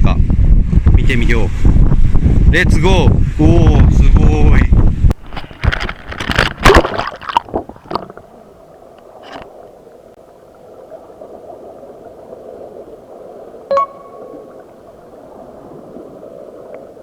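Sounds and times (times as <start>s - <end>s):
muffled underwater rush: 0.3s - 17.0s
knocks and splashes: 5.1s - 8.3s
short beep: 13.7s - 14.5s.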